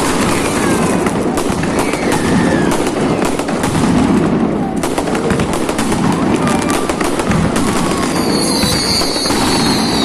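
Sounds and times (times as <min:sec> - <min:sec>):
fireworks cracks and bangs: 0:00.0 - 0:10.0
faint gliding whistles: 0:08.2 - 0:10.0.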